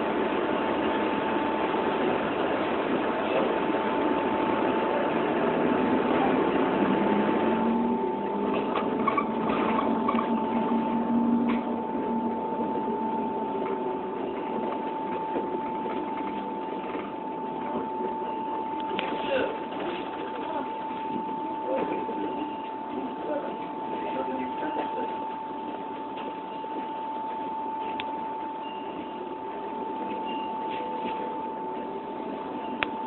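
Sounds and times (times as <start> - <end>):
vehicle engine and road noise: 0.0 - 21.0
steady high-pitched tone: 0.0 - 33.0.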